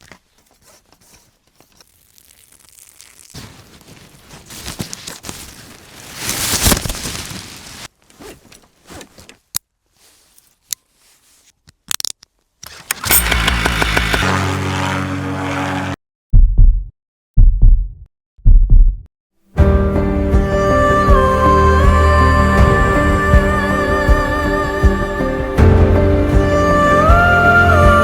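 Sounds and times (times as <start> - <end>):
sharp clicks: 12.0 - 14.3
machine running: 12.8 - 16.0.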